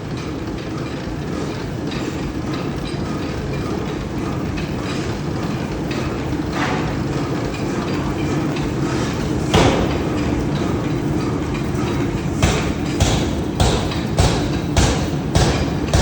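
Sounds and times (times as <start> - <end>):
heavy hammer strikes on metal: 9.5 - 16.0.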